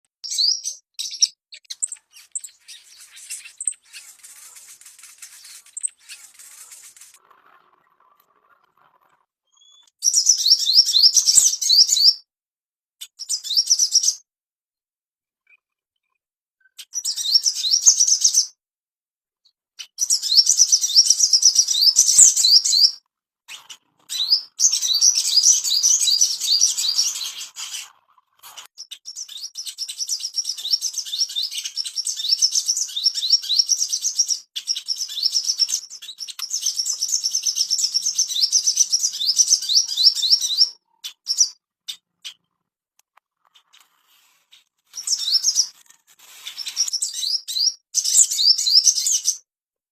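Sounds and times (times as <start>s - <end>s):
bird twittering: 0.2s - 4.4s, 19.8s - 27.8s, 28.8s - 42.4s, 45.0s - 45.7s.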